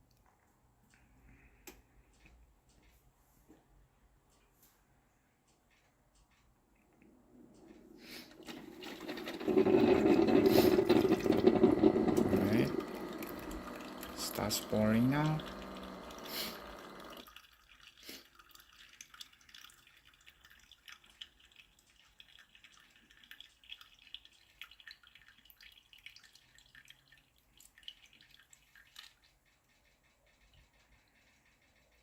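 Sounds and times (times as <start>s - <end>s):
coffee maker humming: 8.1s - 17.4s.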